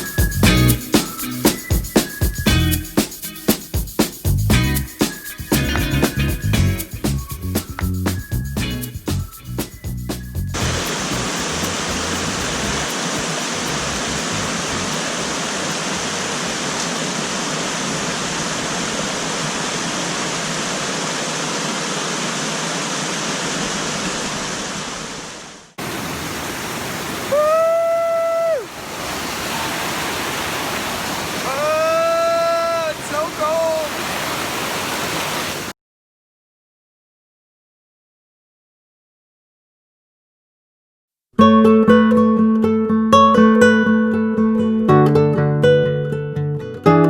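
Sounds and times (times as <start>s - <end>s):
rushing water: 10.6s - 35.8s.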